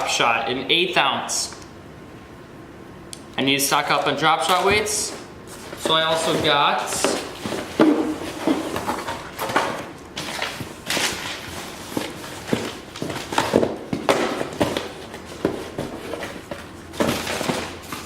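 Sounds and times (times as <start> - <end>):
plastic packaging rustling: 4.0 - 18.0.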